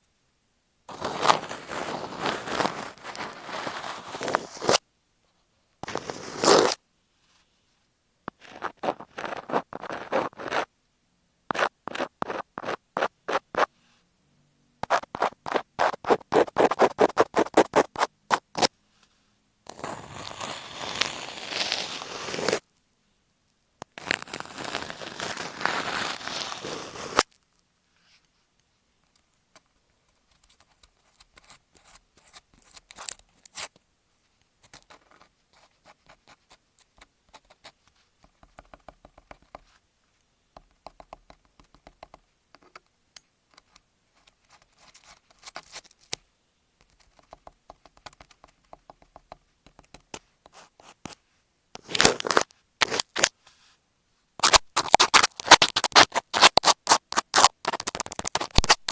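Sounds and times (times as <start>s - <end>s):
scratching on masking tape: 0.9s - 4.8s, 5.8s - 6.8s, 8.3s - 10.7s, 11.5s - 13.7s, 14.8s - 18.7s, 19.7s - 22.6s, 23.8s - 27.4s, 30.2s - 33.8s, 44.4s - 46.2s, 50.5s - 51.2s, 51.8s - 53.3s, 54.4s - 58.9s.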